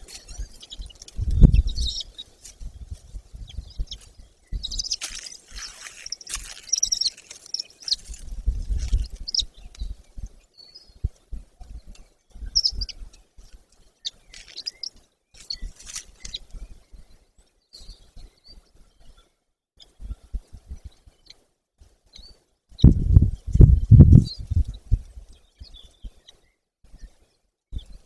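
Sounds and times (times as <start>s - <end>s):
high-pitched chick chirps: 0.0s - 2.3s, 3.3s - 10.0s, 12.4s - 13.0s, 14.0s - 16.5s
low thumps and rumbling: 1.2s - 2.0s, 8.2s - 10.0s, 22.8s - 25.3s.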